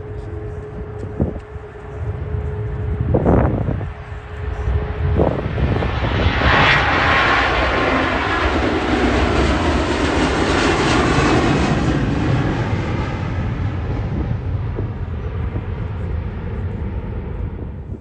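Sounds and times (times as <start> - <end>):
airliner engines passing: 0.0 - 18.0
wind buffeting microphone: 0.0 - 18.0.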